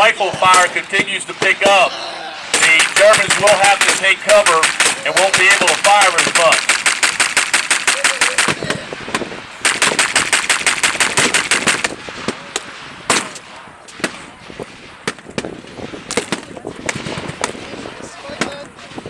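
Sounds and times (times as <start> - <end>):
single rifle shots: 0.0 - 19.0
machine gun bursts: 2.5 - 11.9.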